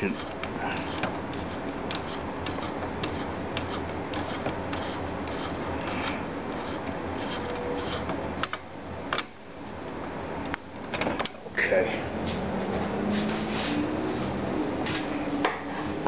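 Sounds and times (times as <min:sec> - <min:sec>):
hands rubbing computer parts: 0:00.0 - 0:08.2
steady low hum: 0:00.0 - 0:16.0.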